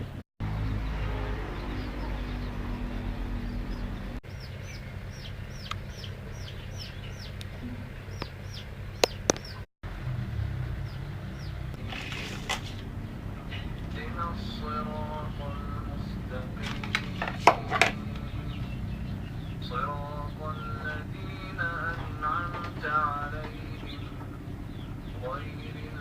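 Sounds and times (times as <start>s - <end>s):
bird chirping: 0.4s - 9.7s, 10.6s - 26.0s
steady low rumble: 12.6s - 26.0s.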